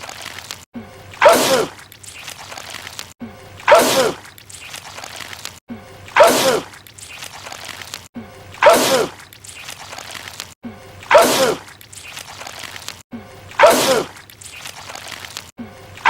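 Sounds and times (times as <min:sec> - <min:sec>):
man sneezing loudly: 0:01.2 - 0:01.7, 0:06.2 - 0:06.7, 0:08.6 - 0:09.2, 0:11.1 - 0:11.6, 0:13.6 - 0:14.1.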